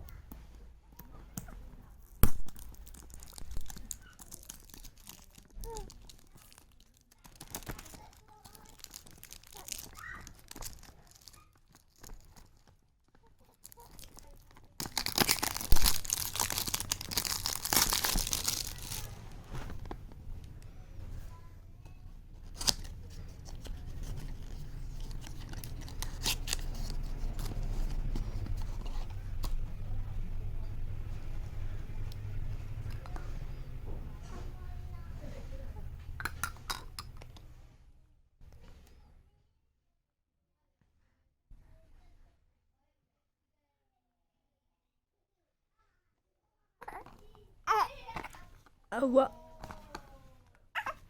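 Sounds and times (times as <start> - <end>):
packaging rustling and crinkling: 2.0 - 12.8, 13.4 - 20.6, 22.4 - 29.7
low steady rumble: 15.6 - 36.2.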